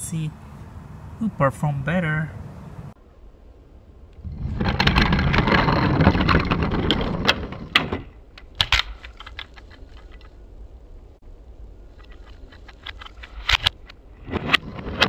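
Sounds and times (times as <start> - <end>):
sharp clicks and knocks: 4.2 - 10.3, 12.0 - 15.0
toy train wheels rattling on track: 4.3 - 10.3, 12.0 - 15.0.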